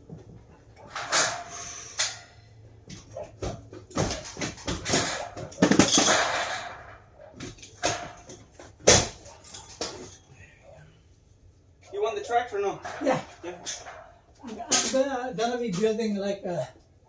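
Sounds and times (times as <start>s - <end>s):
knocks and clattering: 0.0s - 10.2s, 12.5s - 15.9s.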